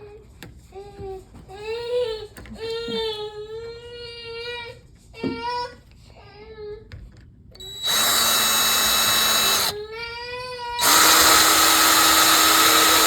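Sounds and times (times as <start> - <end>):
power drill whining: 7.6 - 9.8, 10.8 - 13.0.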